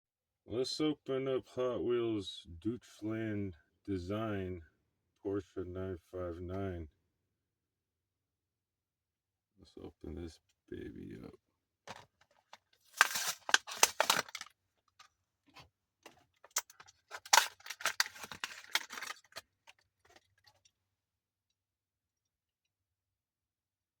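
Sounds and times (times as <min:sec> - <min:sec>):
plastic packaging crinkling: 0:11.9 - 0:14.5, 0:16.1 - 0:20.7.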